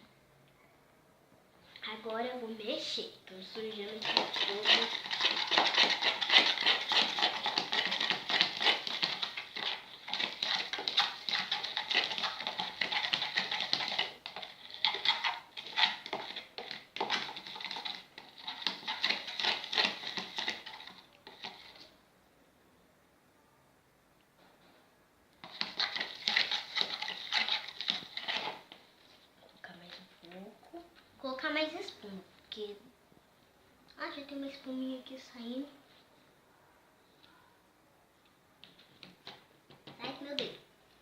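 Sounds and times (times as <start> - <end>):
wet sticky slime squelches: 3.5 - 21.9.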